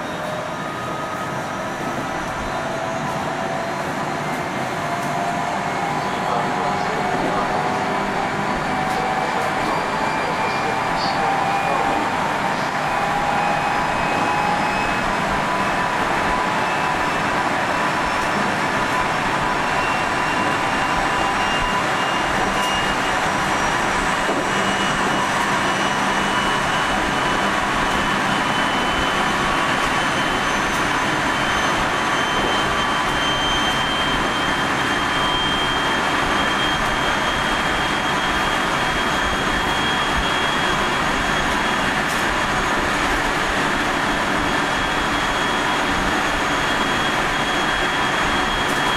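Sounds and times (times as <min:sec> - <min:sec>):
wheels rumbling on rail: 0:00.0 - 0:48.9
traction motor whine: 0:11.4 - 0:48.9.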